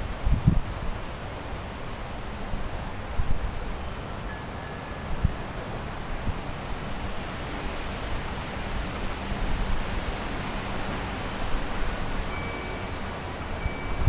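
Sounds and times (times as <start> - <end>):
wind buffeting microphone: 0.0 - 1.0.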